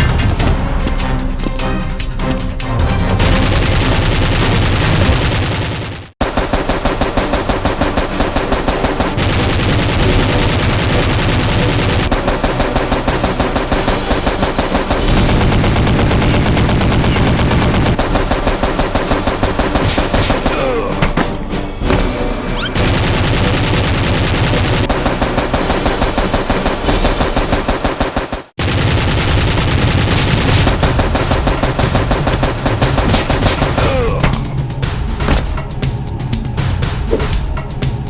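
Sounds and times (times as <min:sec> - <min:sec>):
automatic gunfire bursts: 0:03.3 - 0:20.7, 0:22.8 - 0:34.0.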